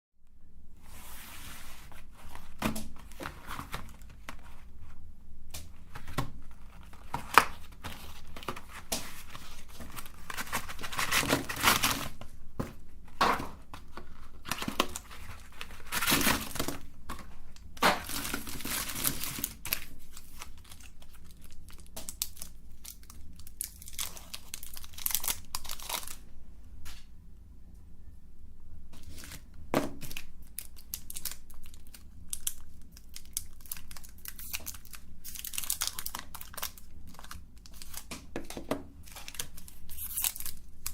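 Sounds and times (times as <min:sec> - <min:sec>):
packaging crinkling and tearing: 0:05.8 - 0:12.3, 0:13.2 - 0:26.2, 0:29.0 - 0:40.9.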